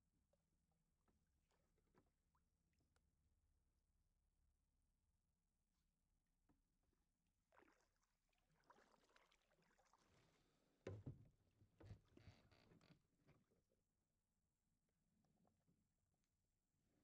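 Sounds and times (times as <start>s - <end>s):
paddle swishing and dripping water: 7.2s - 12.9s.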